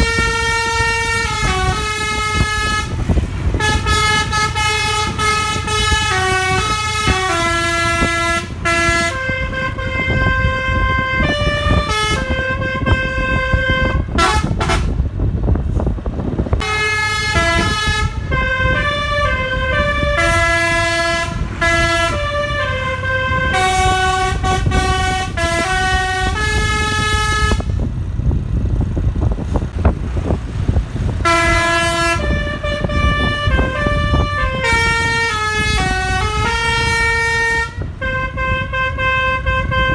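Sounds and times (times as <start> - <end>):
multi-tone air horns melody: 0.0 - 15.0, 16.6 - 27.9, 31.2 - 39.9
low vehicle rumble: 0.0 - 39.9.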